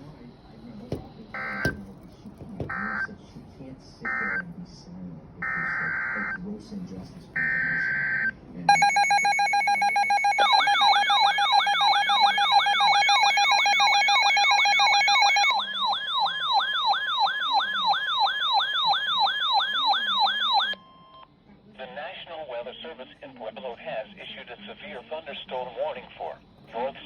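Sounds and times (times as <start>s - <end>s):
two-tone attention signal: 8.7s - 15.9s
fast yelping siren: 8.7s - 20.8s.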